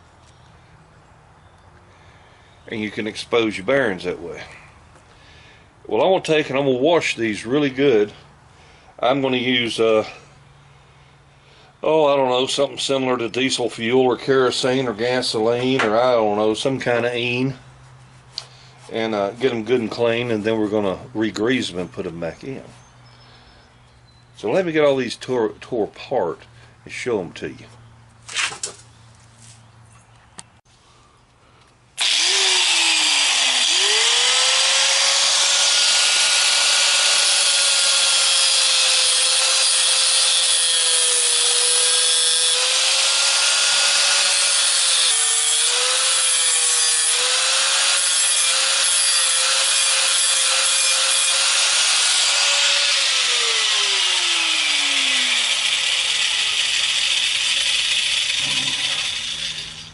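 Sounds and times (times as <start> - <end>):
power tool grinding: 32.0 - 59.9.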